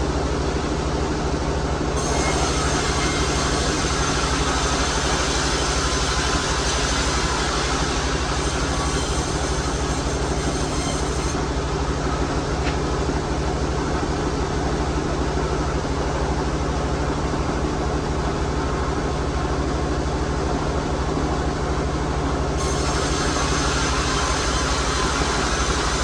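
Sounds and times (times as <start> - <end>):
low motor drone: 0.0 - 13.3, 22.5 - 26.0
saw cutting timber: 2.0 - 11.4, 22.6 - 26.0.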